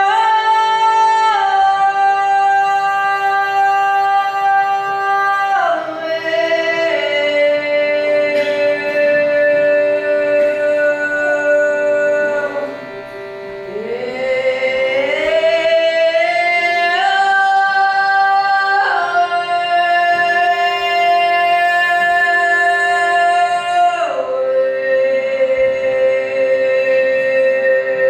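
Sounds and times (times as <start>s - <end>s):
person singing long notes: 0.0s - 28.0s
steady drone: 6.0s - 24.6s.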